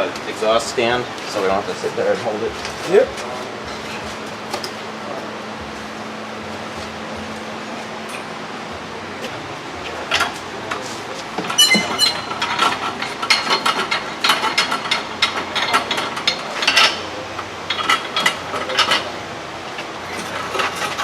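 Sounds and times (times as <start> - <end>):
metal parts clanking and rattling: 11.4 - 19.2, 19.8 - 21.0.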